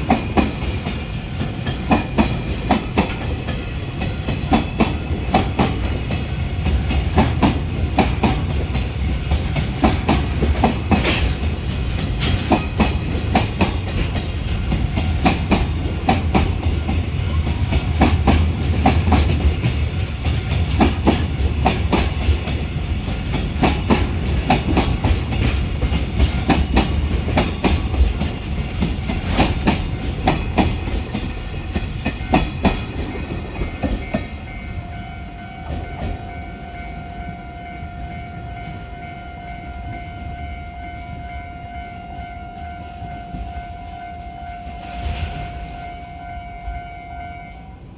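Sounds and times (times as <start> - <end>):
wheels clattering over rail joints: 0.0 - 34.6
low train rumble: 0.0 - 47.9.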